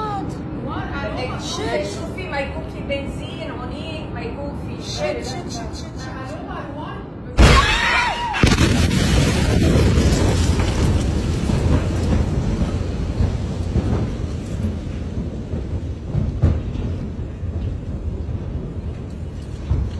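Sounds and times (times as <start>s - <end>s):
deep explosion rumbling: 7.4s - 19.0s.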